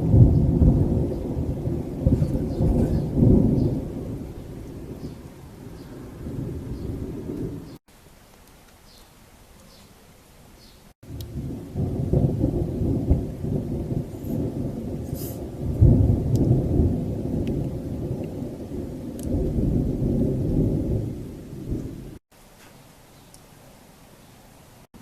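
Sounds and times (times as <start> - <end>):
rolling thunder rumble: 0.0 - 7.8, 11.0 - 22.2
faint hiss of rain: 0.0 - 25.0.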